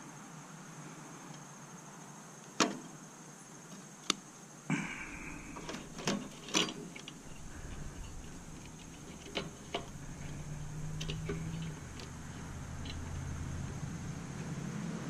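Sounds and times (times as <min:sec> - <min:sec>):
metallic clicks and clanks: 0:05.1 - 0:14.5.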